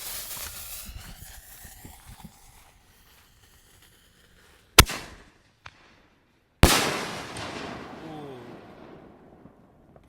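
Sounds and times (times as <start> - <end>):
firework launch bang: 4.8 - 5.9, 6.6 - 10.0.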